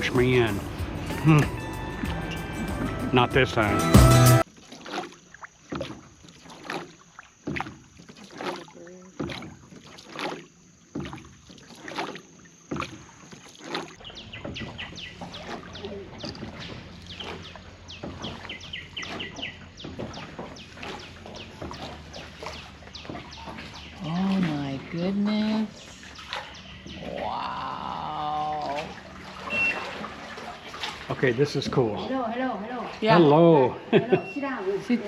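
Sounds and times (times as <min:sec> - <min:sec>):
oars dipping in water: 0:00.0 - 0:35.0
birds chirping: 0:13.4 - 0:35.0.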